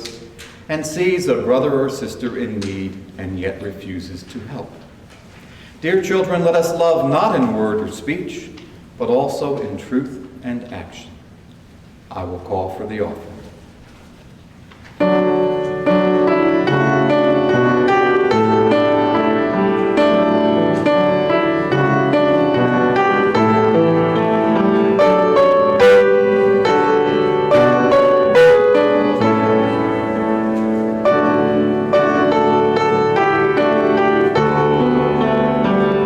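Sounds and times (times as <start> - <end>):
slow piano piece: 13.2 - 36.0.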